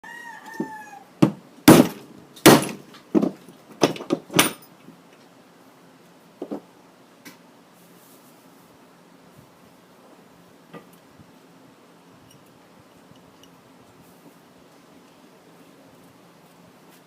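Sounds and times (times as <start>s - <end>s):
hard objects knocking and clattering: 1.2s - 4.6s.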